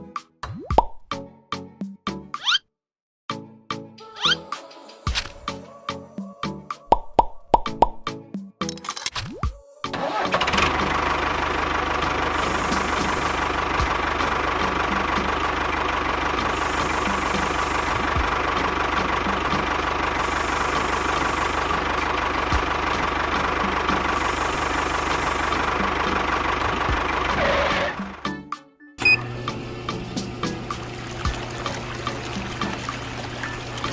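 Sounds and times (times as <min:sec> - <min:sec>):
engine running: 0:09.9 - 0:28.4, 0:29.0 - 0:33.9.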